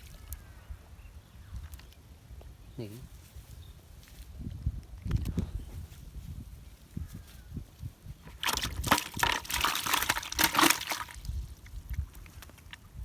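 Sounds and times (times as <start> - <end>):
water splashing and sloshing: 8.2 - 13.0.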